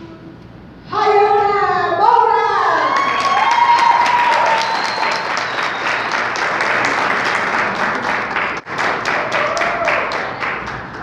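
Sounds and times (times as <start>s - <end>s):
audience applauding: 2.9s - 11.0s.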